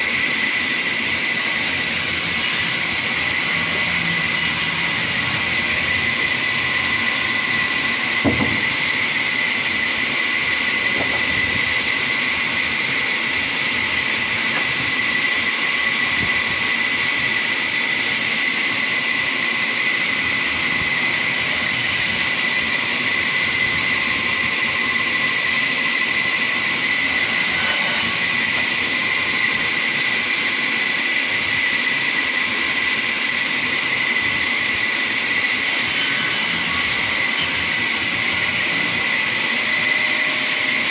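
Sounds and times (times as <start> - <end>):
sawmill saw whining: 0.0 - 40.9
knock: 8.2 - 8.8.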